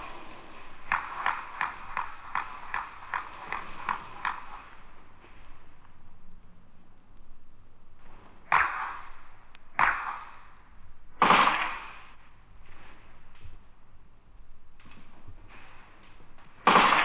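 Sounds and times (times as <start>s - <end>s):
gunshots with echoing tail: 8.4s - 10.6s, 11.2s - 12.2s, 16.6s - 17.0s.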